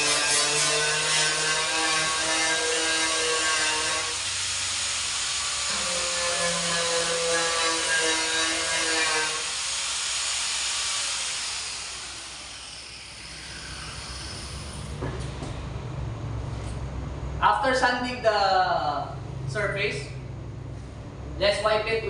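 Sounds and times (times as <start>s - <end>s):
angle grinder grinding metal: 0.0s - 15.0s.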